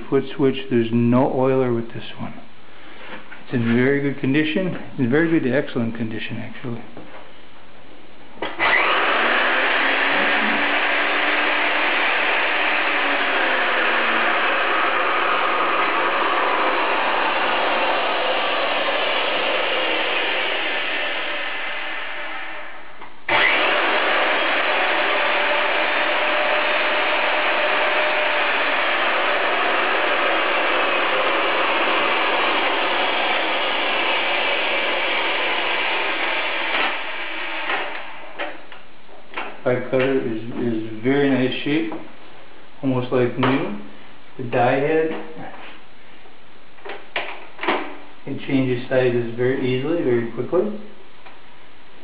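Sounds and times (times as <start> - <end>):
pipe threader motor whining: 8.4 - 38.6.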